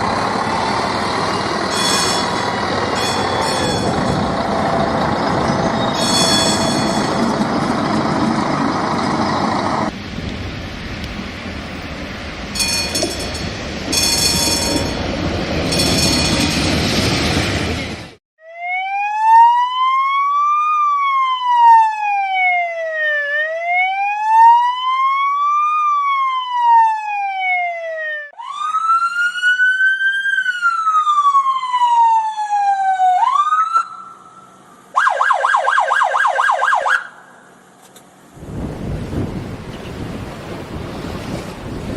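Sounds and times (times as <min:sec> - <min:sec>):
emergency vehicle siren: 0:00.0 - 0:09.9, 0:18.4 - 0:37.5.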